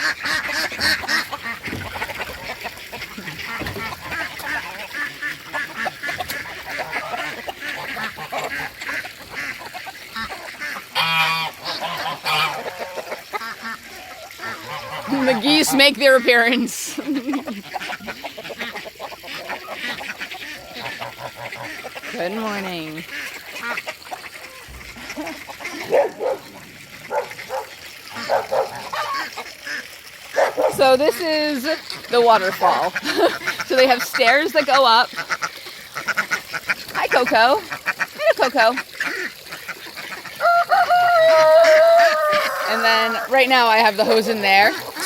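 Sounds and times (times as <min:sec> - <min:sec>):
goose honks: 0:00.0 - 0:16.4
ducks quacking: 0:00.0 - 0:45.0.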